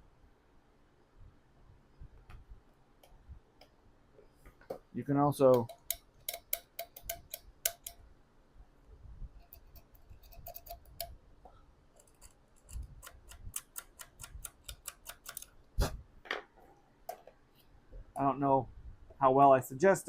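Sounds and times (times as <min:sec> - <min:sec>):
scraping clicks on metal terminal: 0:12.0 - 0:15.5.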